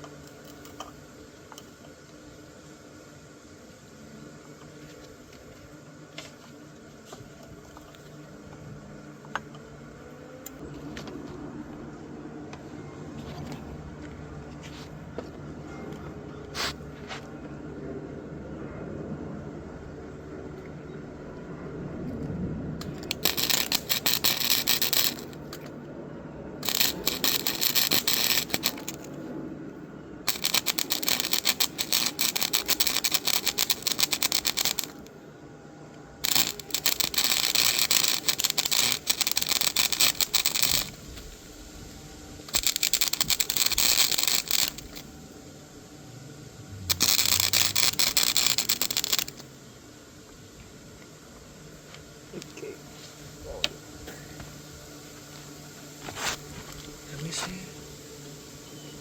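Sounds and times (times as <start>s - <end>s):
hand tool scraping clicks: 22.8s - 25.7s, 26.6s - 29.1s, 30.3s - 35.1s, 36.2s - 41.2s, 42.5s - 45.0s, 46.9s - 49.4s.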